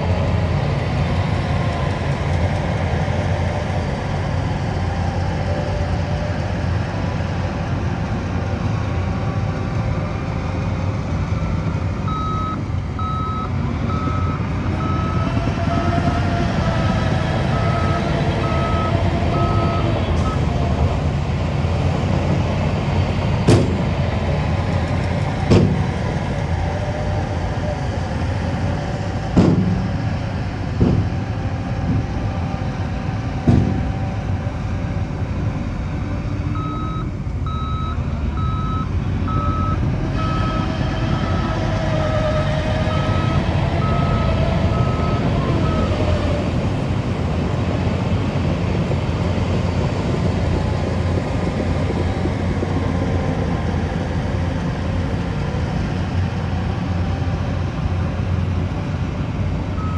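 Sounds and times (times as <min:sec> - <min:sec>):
diesel engine running: 0:00.0 - 0:59.9
reversing alarm beeping: 0:12.1 - 0:20.5, 0:36.6 - 0:40.7, 0:42.9 - 0:46.1
sharp knocks: 0:29.4 - 0:30.0, 0:30.8 - 0:31.2.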